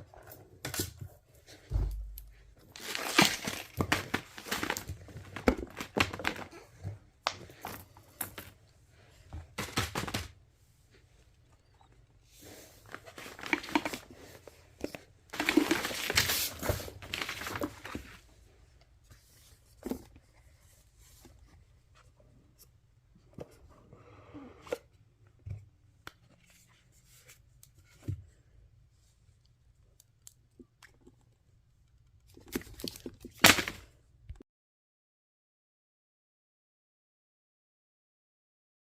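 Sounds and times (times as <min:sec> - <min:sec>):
rustling and scraping: 0:12.2 - 0:18.4.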